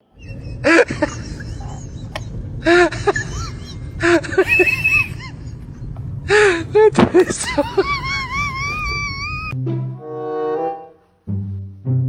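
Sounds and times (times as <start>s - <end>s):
whistling chirps: 0.0s - 6.8s
car rumble: 0.0s - 9.6s.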